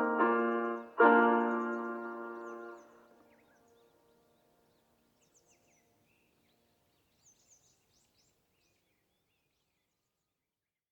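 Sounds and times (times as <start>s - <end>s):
loudspeaker chime chord: 0.0s - 2.8s
small birds chirping: 0.0s - 4.1s.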